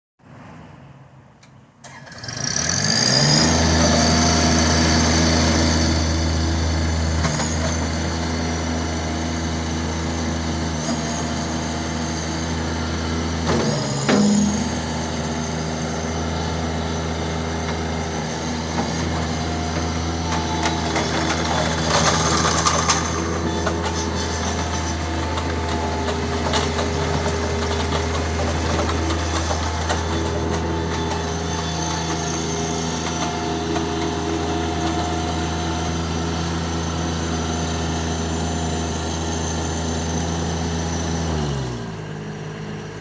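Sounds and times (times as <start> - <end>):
diesel engine running: 1.9 - 43.0
machine jolt: 20.3 - 32.5.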